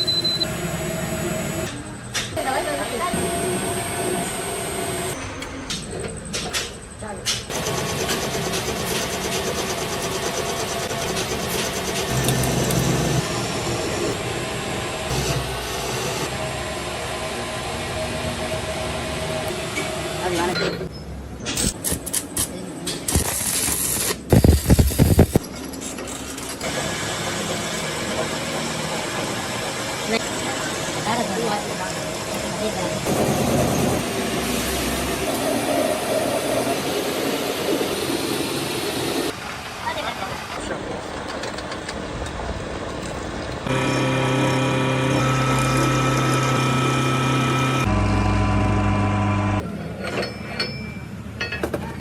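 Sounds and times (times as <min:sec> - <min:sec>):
machinery running: 0:00.0 - 0:20.2, 0:23.1 - 0:39.4, 0:40.8 - 0:49.6
small engine running: 0:43.7 - 0:49.6.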